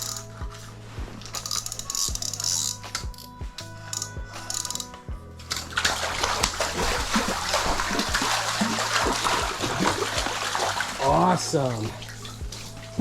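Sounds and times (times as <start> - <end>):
water splashing from thrashing fish: 5.5 - 13.0.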